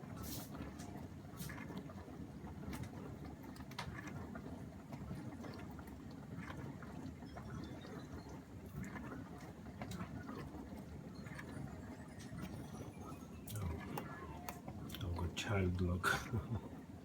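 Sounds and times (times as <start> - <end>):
dishwasher running: 4.9 - 17.0.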